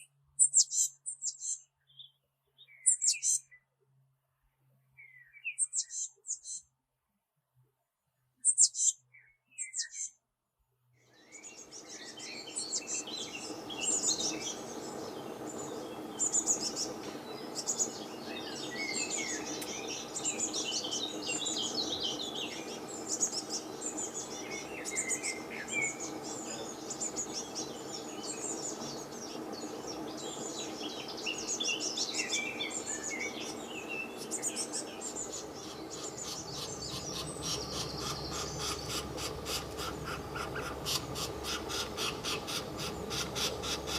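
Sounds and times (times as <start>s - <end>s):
small birds chirping: 0.0s - 3.7s, 4.9s - 6.8s, 8.4s - 10.2s, 11.0s - 43.9s
steady low hum: 11.1s - 43.9s.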